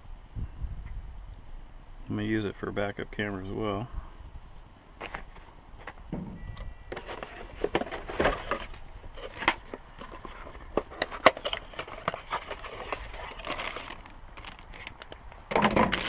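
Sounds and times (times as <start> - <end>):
packaging crinkling: 6.9 - 16.0.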